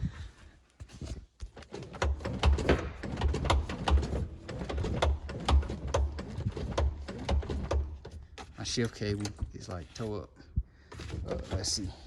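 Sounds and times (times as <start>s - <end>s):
clatter of clicks and knocks: 1.5s - 9.6s.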